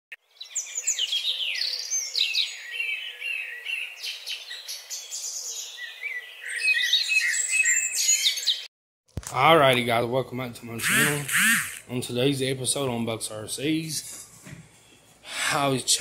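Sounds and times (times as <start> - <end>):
birds chirping and singing: 0.2 - 8.7.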